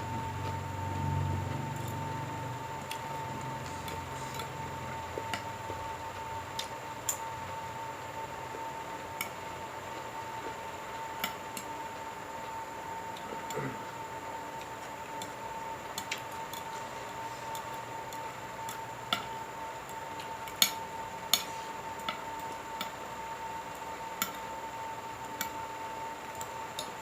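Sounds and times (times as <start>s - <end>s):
high-pitched hum: 0.0s - 6.4s.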